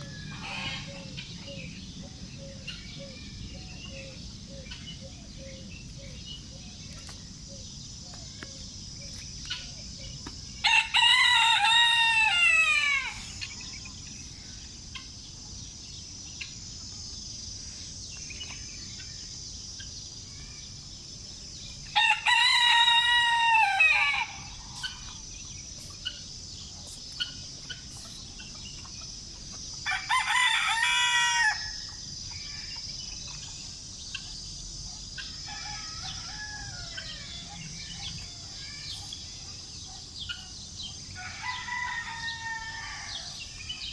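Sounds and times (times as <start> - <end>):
rooster crowing: 10.6 - 13.3, 21.9 - 24.6, 29.8 - 31.9, 35.3 - 37.6, 41.2 - 43.6.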